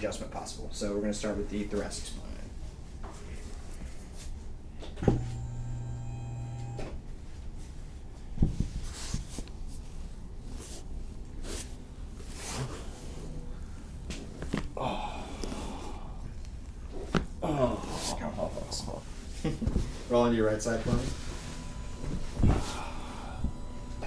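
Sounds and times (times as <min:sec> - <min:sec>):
steady hum: 0:05.1 - 0:07.0, 0:20.7 - 0:24.0
cloth rustling on table: 0:08.4 - 0:14.8.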